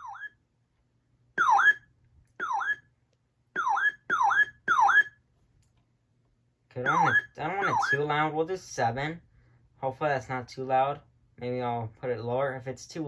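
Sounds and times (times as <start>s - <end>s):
weather radio alert siren: 0.0s - 0.3s, 1.4s - 1.8s, 2.4s - 2.8s, 3.6s - 5.2s, 6.8s - 8.1s.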